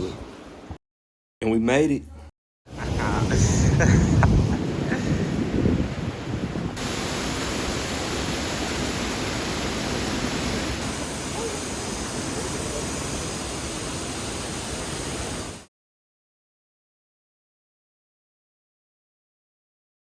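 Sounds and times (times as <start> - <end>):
waterfall roaring: 2.8 - 5.2, 6.1 - 15.7.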